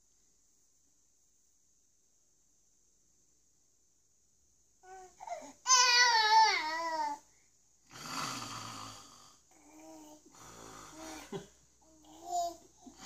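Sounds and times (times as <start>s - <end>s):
baby crying and whimpering: 4.8s - 7.2s
man snoring: 7.9s - 9.6s, 10.3s - 11.4s.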